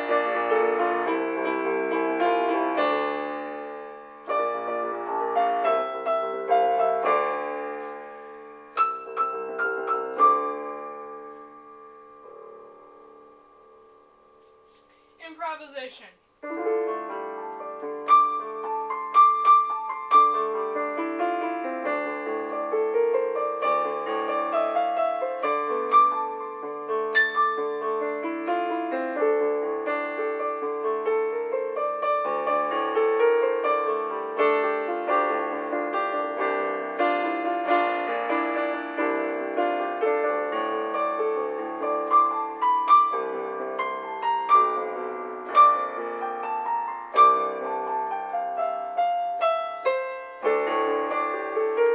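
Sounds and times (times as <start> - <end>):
solo piano improvisation: 0.0 - 15.2, 16.4 - 51.9.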